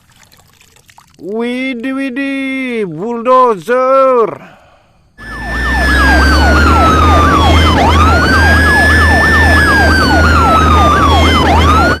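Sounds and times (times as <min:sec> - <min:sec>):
fast yelping siren: 0:05.2 - 0:12.0
wailing siren: 0:05.2 - 0:12.0.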